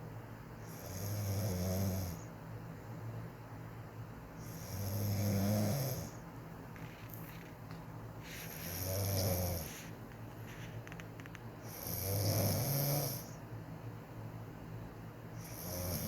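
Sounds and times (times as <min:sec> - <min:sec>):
woman snoring: 0:00.7 - 0:02.3, 0:04.4 - 0:06.2, 0:08.7 - 0:09.8, 0:11.6 - 0:13.4, 0:15.4 - 0:16.0.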